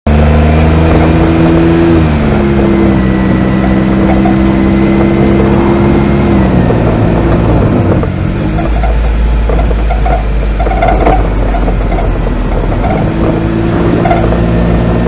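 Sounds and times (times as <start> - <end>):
car engine running: 0.1 - 15.0
hood latch rattling: 8.5 - 13.2.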